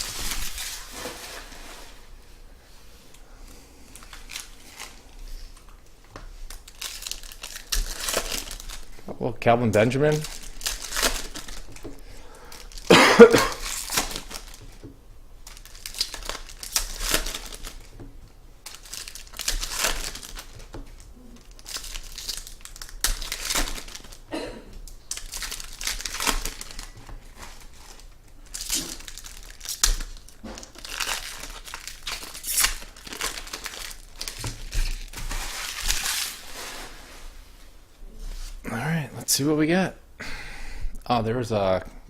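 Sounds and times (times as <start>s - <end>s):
card pack wrappers crinkling and tearing: 0.0s - 1.1s, 3.9s - 18.0s, 18.6s - 36.5s.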